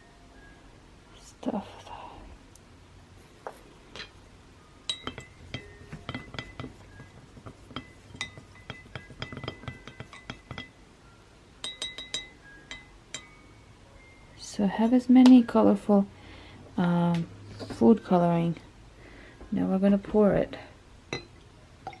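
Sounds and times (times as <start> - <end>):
stirring stick clinking against glass: 4.8 - 10.8, 11.6 - 13.6, 21.1 - 22.0.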